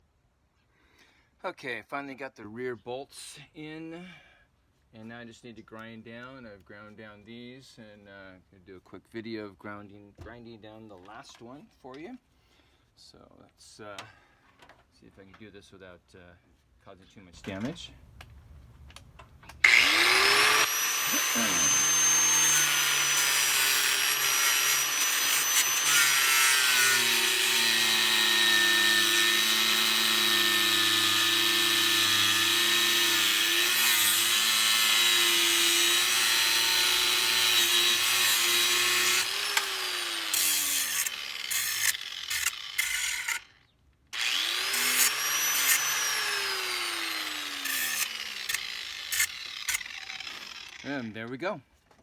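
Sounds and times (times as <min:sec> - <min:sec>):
power grinder grinding metal: 0:19.6 - 0:43.6, 0:44.2 - 0:51.1.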